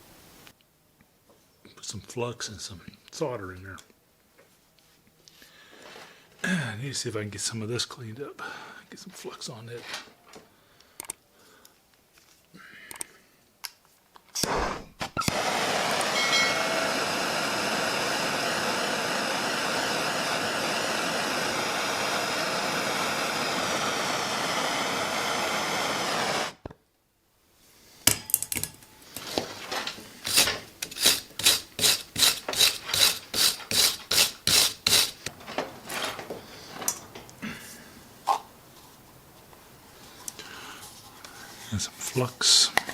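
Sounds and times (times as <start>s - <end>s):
steady hiss: 0.0s - 0.6s, 14.5s - 26.6s, 28.9s - 35.4s, 36.0s - 42.9s
brush scrubbing metal: 30.2s - 35.3s.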